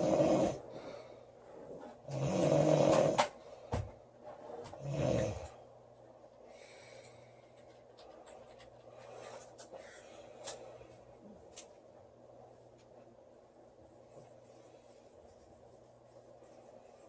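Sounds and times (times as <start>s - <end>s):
woman snoring: 0.0s - 0.6s, 2.1s - 3.3s, 4.8s - 5.5s
soft breathing: 0.0s - 2.1s, 6.3s - 11.5s
low steady hum: 0.0s - 17.0s.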